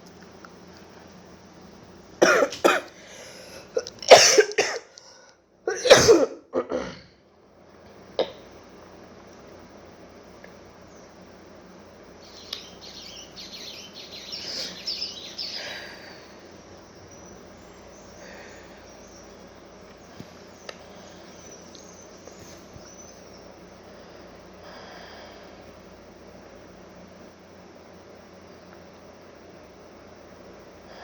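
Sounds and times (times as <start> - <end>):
small birds chirping: 10.8 - 23.9.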